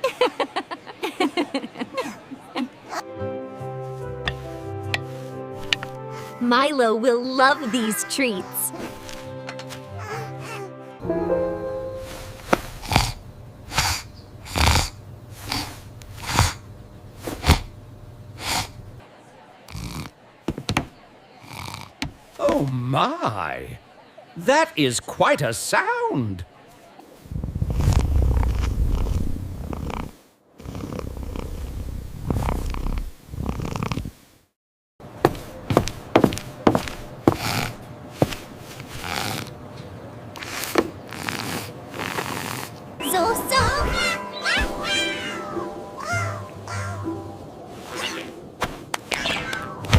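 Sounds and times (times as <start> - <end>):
cartoon kitten snoring: 12.8 - 16.7, 18.4 - 18.8, 19.7 - 20.2, 21.4 - 22.0, 27.3 - 34.2, 38.9 - 39.5, 40.4 - 42.8.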